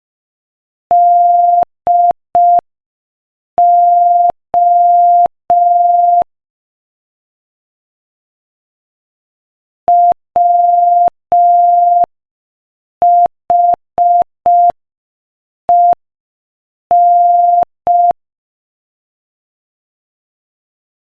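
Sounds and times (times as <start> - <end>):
morse code beeps: 0.9 - 2.6, 3.6 - 6.3, 9.9 - 12.1, 13.0 - 14.8, 16.9 - 18.2.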